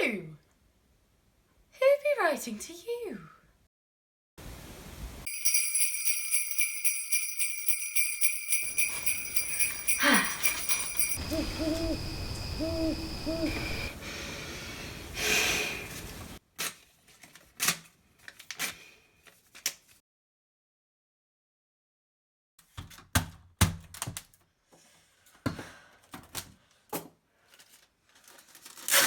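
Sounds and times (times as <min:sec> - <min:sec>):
jingle bells shaking: 0:05.3 - 0:13.1
short hooting calls: 0:09.0 - 0:14.0
falling whistle-like glide: 0:11.1 - 0:14.0.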